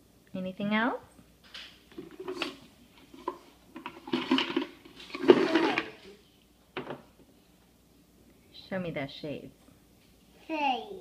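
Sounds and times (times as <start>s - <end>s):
toys rattling in a jar: 3.8s - 6.1s.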